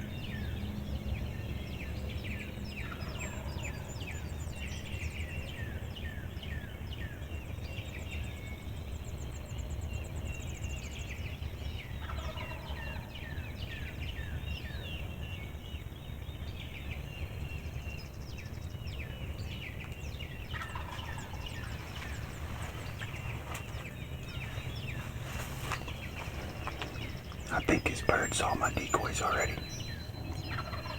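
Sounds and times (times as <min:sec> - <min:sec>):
songbirds chirping and singing: 0:00.0 - 0:30.9.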